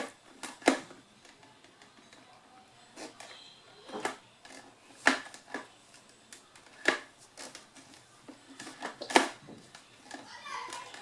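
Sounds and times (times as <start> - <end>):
appliance parts clicking and knocking: 0.0 - 2.2, 6.3 - 11.0.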